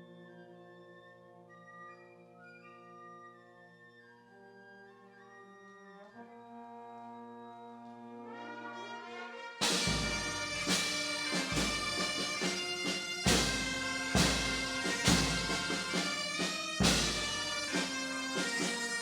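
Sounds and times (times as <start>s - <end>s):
bagpipes: 0.0s - 19.0s
drum beats: 9.6s - 19.0s
held instrumental chords: 9.6s - 19.0s.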